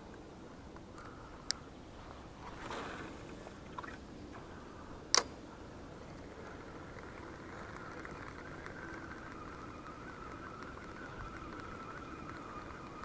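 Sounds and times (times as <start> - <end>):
reel click: 5.1 - 5.4.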